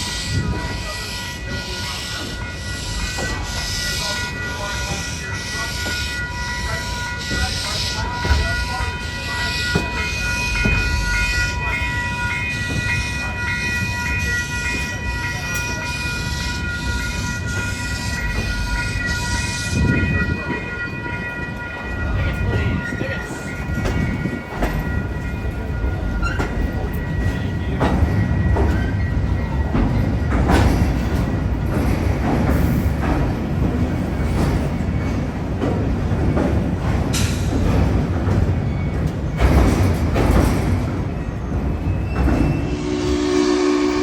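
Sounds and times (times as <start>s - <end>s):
train clanks: 0.0s - 44.0s
train rumbling: 0.0s - 44.0s
steam train ringing chord: 42.6s - 44.0s.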